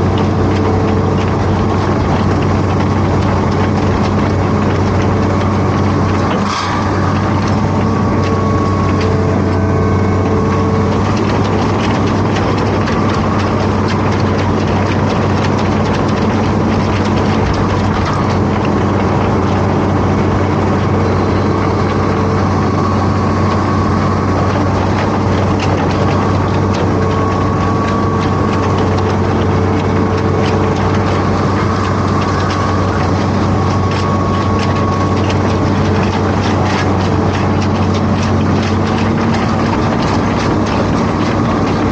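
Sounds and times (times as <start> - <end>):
excavator diesel engine droning: 0.0 - 41.9
high engine whine: 0.0 - 41.9.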